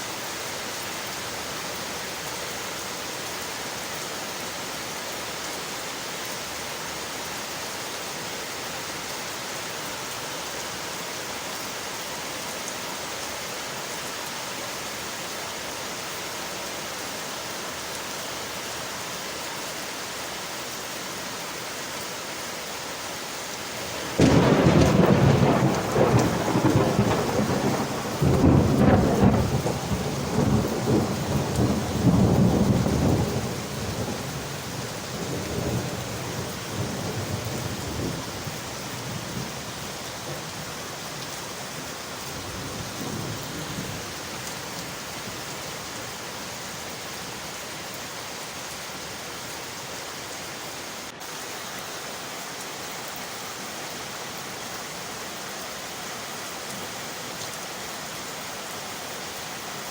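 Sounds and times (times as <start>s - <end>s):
rain on window glass: 23.6s - 48.9s
thunderclap rumbling: 23.8s - 39.7s.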